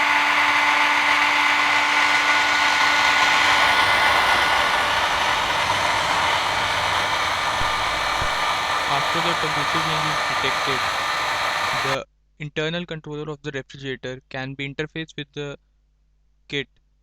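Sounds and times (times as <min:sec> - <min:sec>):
hair dryer running: 0:00.0 - 0:12.0.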